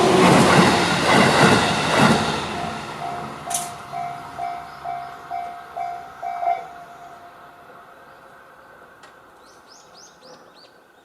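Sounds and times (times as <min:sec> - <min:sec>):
bird chirping: 0:03.0 - 0:07.4.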